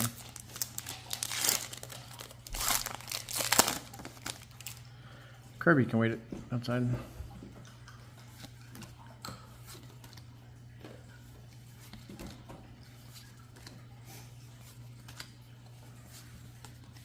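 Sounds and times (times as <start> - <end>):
trading cards rustling: 0.0 - 4.9.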